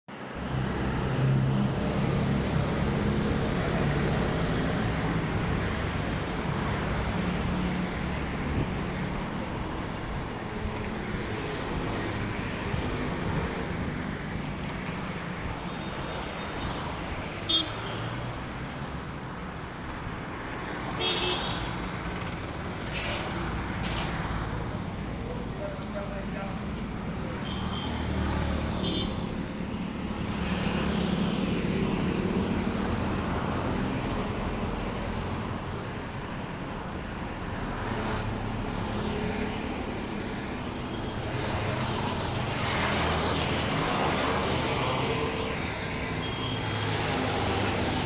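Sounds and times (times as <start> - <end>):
traffic rumble: 18.3 - 30.7.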